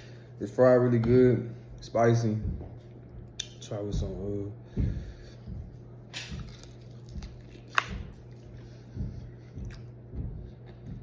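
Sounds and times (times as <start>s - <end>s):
steady low hum: 0.0s - 11.0s
person chewing: 6.1s - 11.0s.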